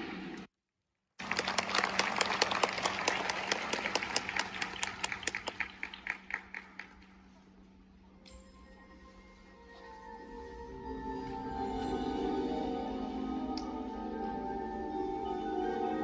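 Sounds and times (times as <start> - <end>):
audience applause: 1.2 - 7.1.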